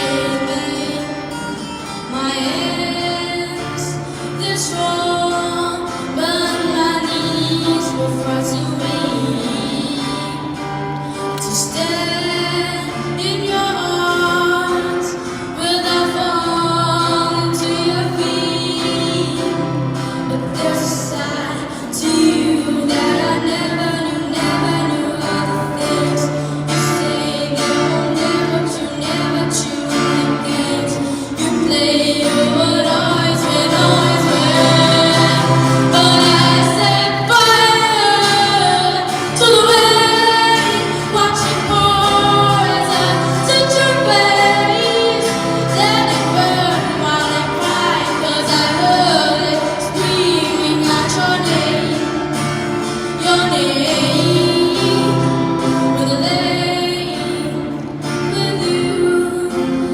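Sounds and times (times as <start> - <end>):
woman singing a pop ballad: 0.0 - 59.9
instrumental accompaniment: 29.9 - 55.8.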